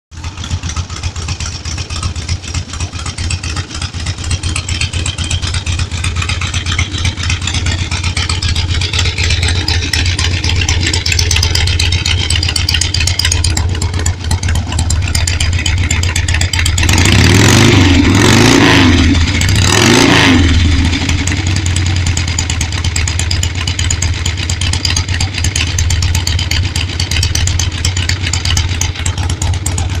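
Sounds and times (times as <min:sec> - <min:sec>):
motorcycle engine idling and revving: 0:00.1 - 0:30.0.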